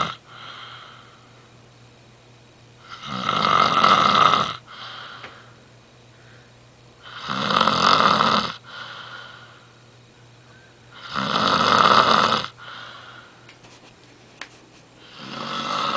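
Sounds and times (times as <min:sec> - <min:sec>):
person snoring loudly: 0:00.0 - 0:00.7, 0:02.8 - 0:04.7, 0:07.0 - 0:08.6, 0:11.0 - 0:12.6, 0:15.0 - 0:15.9
quiet breathing: 0:00.2 - 0:01.6, 0:04.6 - 0:07.2, 0:08.6 - 0:11.0, 0:12.5 - 0:13.5.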